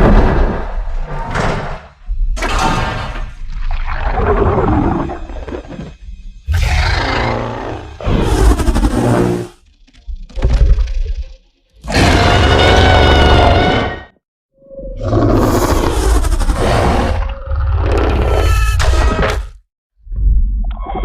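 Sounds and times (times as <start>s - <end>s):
monster roars and screeches: 6.5s - 9.6s, 11.8s - 14.1s, 14.9s - 19.1s.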